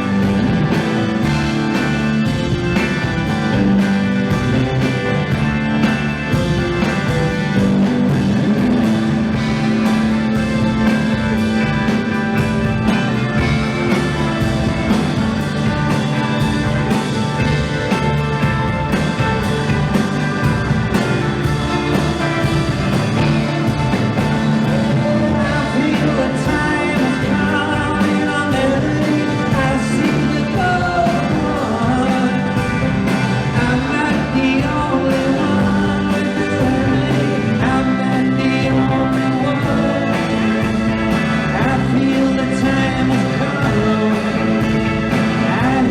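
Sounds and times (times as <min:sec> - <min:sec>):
drum kit beat: 0:00.0 - 0:45.9
electric guitars: 0:00.0 - 0:45.9
person singing: 0:23.2 - 0:45.9.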